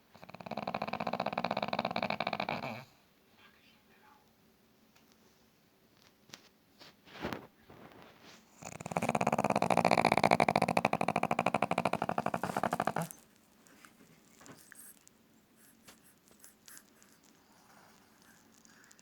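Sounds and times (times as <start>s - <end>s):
dog snoring: 0.0s - 3.1s, 8.4s - 13.3s, 15.6s - 19.0s.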